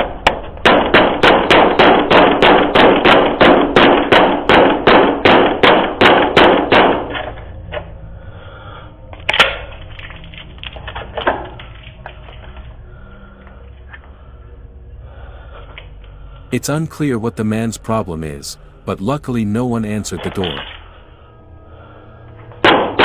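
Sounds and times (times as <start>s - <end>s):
hard bangs on a door: 0.6s - 7.1s
pounding on a door: 0.6s - 7.1s.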